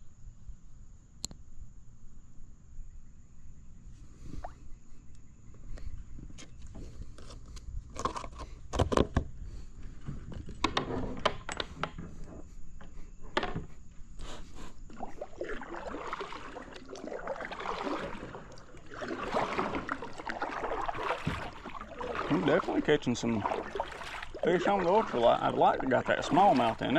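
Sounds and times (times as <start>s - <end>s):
fishing gear knocks and scrapes: 6.4s - 9.3s
rough rustling: 15.7s - 26.9s.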